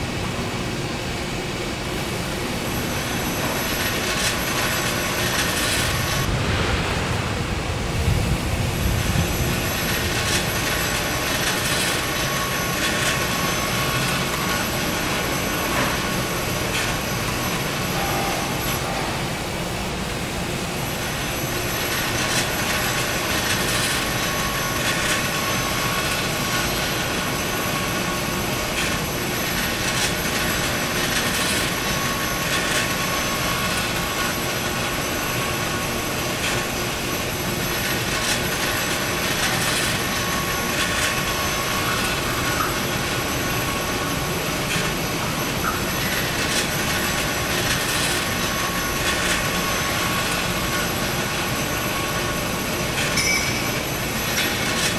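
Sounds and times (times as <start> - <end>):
factory machinery noise: 0.0 - 54.9
high steady machine whines: 0.0 - 54.9
heavy low rumble: 6.3 - 9.8.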